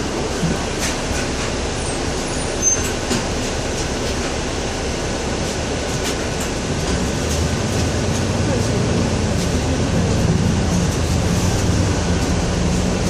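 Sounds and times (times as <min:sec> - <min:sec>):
bus engine and road rumble: 0:00.0 - 0:13.0.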